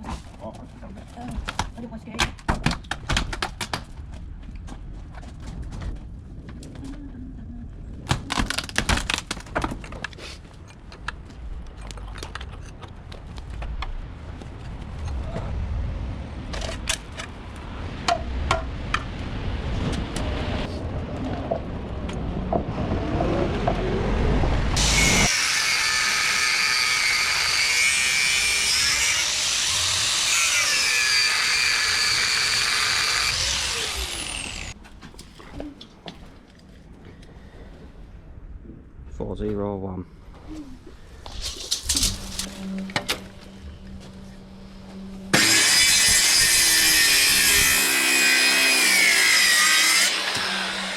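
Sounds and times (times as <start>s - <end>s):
power tool whining: 24.8s - 34.8s.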